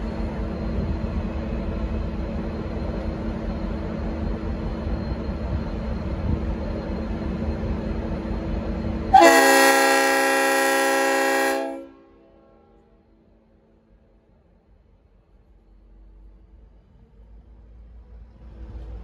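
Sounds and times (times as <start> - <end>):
diesel locomotive rumble: 0.0 - 19.0
locomotive air horn chord: 9.1 - 12.6.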